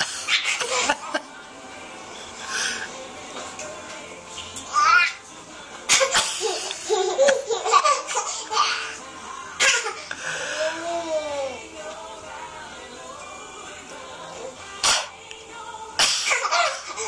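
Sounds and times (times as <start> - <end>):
person giggling: 0.6 - 1.4.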